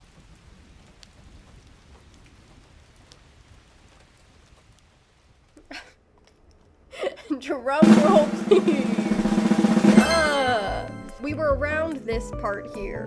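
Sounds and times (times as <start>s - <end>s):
light ticks: 0.0s - 3.2s, 5.5s - 6.7s.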